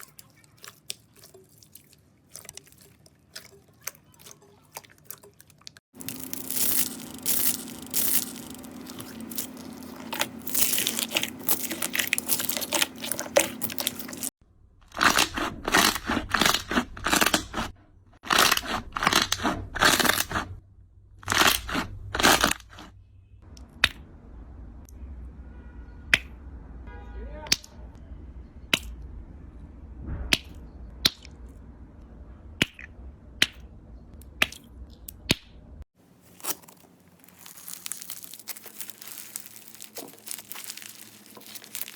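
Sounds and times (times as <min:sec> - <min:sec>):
slime crackling and crunching: 0:00.0 - 0:20.6, 0:21.2 - 0:22.9, 0:36.1 - 0:41.9.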